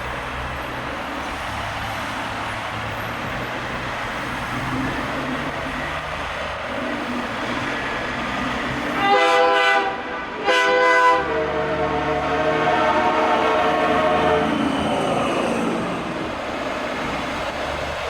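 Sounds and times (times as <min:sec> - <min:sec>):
slow traffic rumble: 0:00.0 - 0:18.0
truck air horn blasts: 0:09.0 - 0:14.6.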